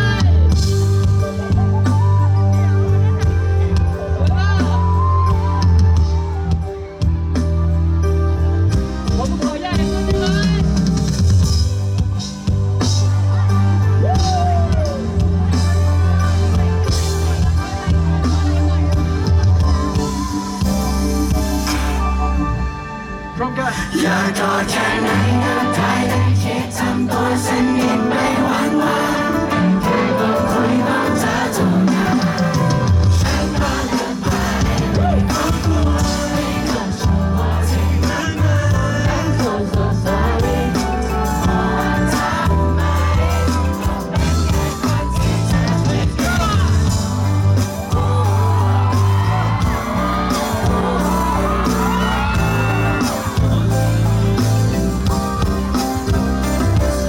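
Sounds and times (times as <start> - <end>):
amplified band music with singing: 0.0 - 57.0
audience shouting: 13.2 - 23.2, 40.2 - 57.0.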